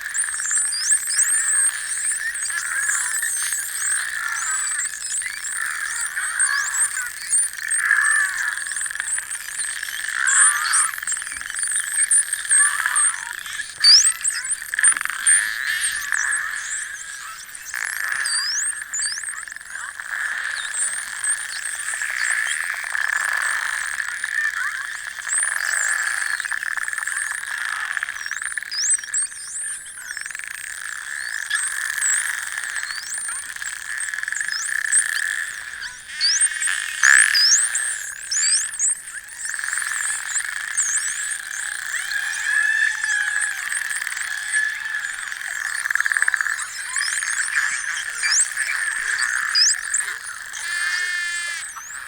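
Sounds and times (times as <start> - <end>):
dolphin click trains and buzzes: 0.0 - 52.0
dolphin whistles: 40.9 - 51.8
dolphin whistles underwater: 41.3 - 45.6.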